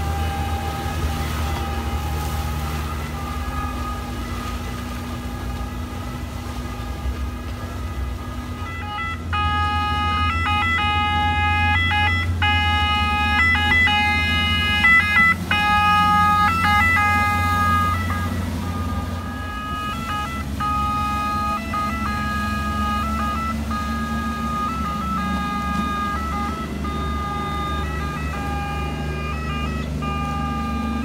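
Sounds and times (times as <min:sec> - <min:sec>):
boat engine rumble: 0:00.0 - 0:31.0
two-tone siren: 0:00.0 - 0:31.0.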